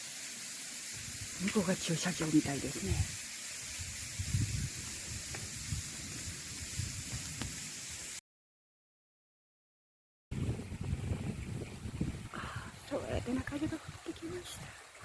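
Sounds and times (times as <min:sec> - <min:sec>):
steady hiss: 0:00.0 - 0:08.2
wind buffeting microphone: 0:02.9 - 0:07.6, 0:10.3 - 0:14.8.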